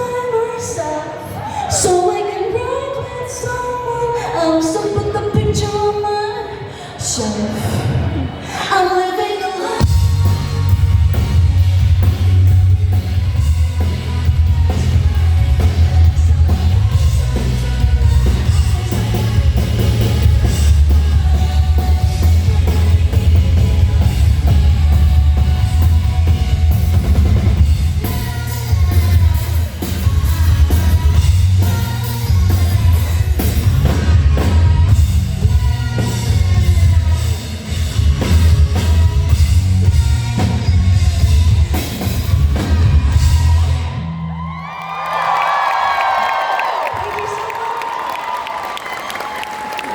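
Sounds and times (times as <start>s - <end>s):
person singing: 0.0s - 44.0s
live rock band playing: 9.7s - 44.4s
drum kit: 9.8s - 44.0s
heavy bass: 9.8s - 44.8s.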